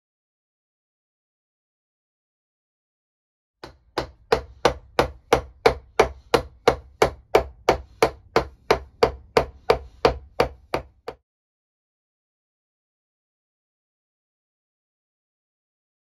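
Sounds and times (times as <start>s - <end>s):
wooden mallet striking chisel: 3.6s - 11.2s.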